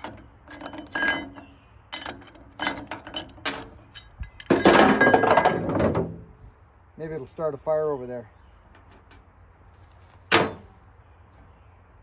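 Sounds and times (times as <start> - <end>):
metal tools clinking: 0.0 - 5.8
metal clattering rattle: 0.0 - 6.3, 10.3 - 10.7.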